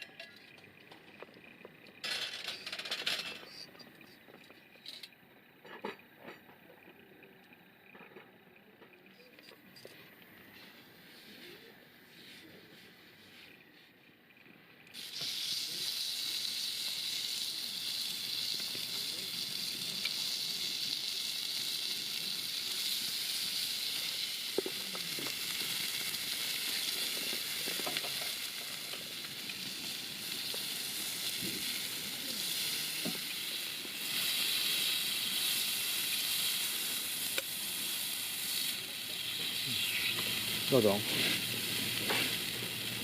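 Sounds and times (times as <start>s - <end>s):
faint low voices: 5.7s - 14.0s
food sizzling in a pan: 14.9s - 43.0s.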